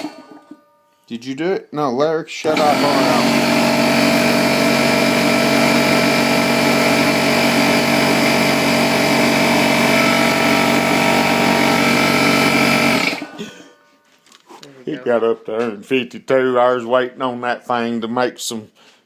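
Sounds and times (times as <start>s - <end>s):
air compressor running: 0.0s - 0.4s, 2.5s - 13.5s.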